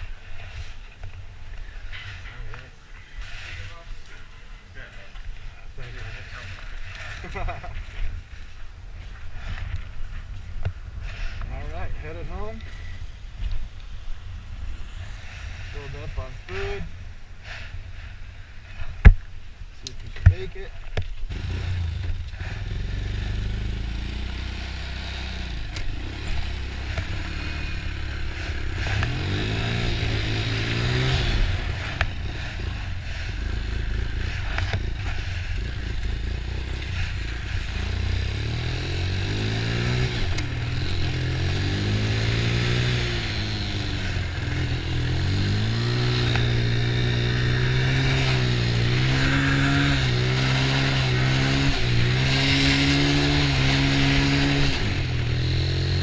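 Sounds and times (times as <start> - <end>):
quad bike engine revving: 5.8 - 8.4, 21.3 - 56.0.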